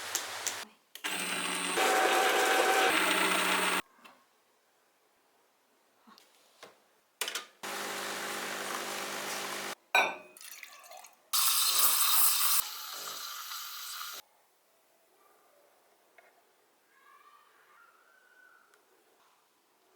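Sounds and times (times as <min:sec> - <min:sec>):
espresso machine pump buzzing: 0:01.1 - 0:03.8, 0:07.6 - 0:09.8.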